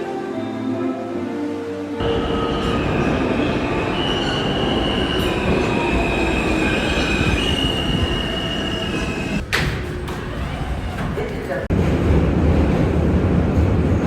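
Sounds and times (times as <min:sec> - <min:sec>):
high wheel squeal: 0:02.0 - 0:09.4
subway train wheels rumbling: 0:02.0 - 0:14.0.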